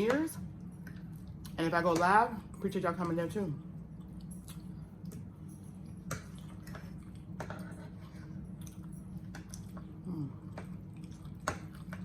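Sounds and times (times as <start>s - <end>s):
steady low hum: 0.0s - 12.0s
close-up chewing mouth sounds: 8.5s - 12.0s.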